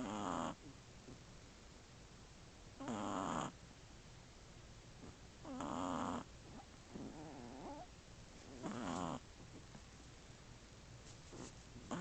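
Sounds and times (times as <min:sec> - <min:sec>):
puppy snoring: 0:00.0 - 0:01.2, 0:02.8 - 0:03.6, 0:05.0 - 0:09.3, 0:11.3 - 0:12.0.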